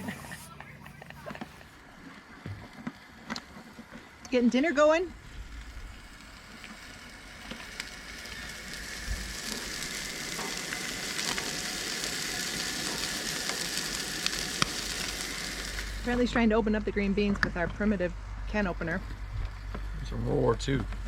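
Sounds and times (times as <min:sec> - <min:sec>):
food sizzling in a pan: 0:03.5 - 0:16.4.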